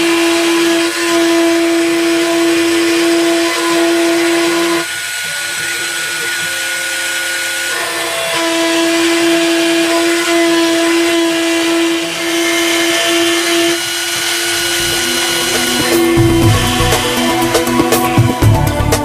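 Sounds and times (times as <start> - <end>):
router spindle whining: 0.0 - 19.0
low sound: 14.2 - 19.0.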